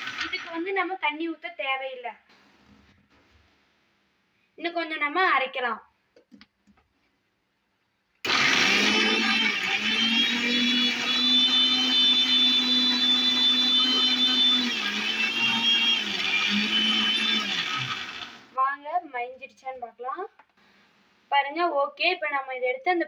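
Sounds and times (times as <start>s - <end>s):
mixer grinder motor whine: 0.0s - 0.6s, 8.3s - 18.6s.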